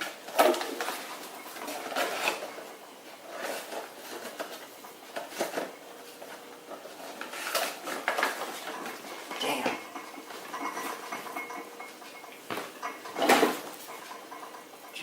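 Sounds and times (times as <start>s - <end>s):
kitchen objects rustling and knocking: 0.0s - 15.0s.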